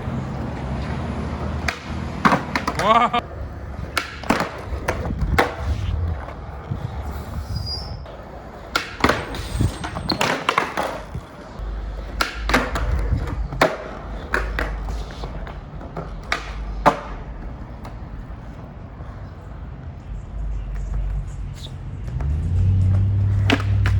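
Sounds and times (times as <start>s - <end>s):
skateboard wheels rolling: 0.0s - 23.9s
skateboard clacking on ground: 0.3s - 23.9s
skateboard pops and landing slaps: 1.6s - 3.0s, 3.8s - 5.9s, 8.6s - 11.3s, 12.1s - 18.0s, 22.9s - 23.9s.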